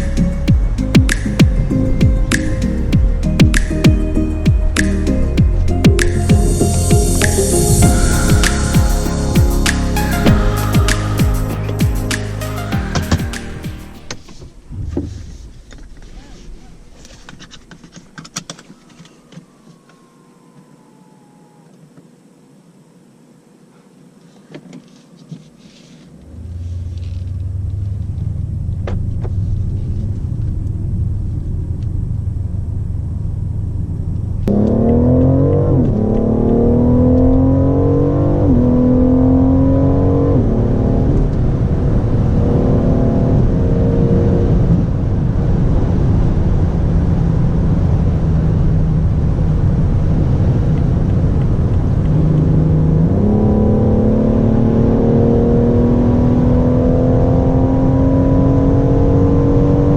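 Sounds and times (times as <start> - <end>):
car rolling drone: 0.0 - 17.5, 26.1 - 59.9
car engine accelerating hard: 26.2 - 59.9.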